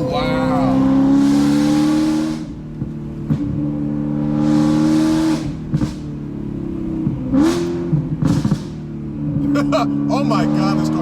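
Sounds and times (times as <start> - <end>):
car engine revving hard: 0.0 - 11.0
exhaust pops: 1.2 - 3.6, 4.5 - 6.4, 7.0 - 8.9.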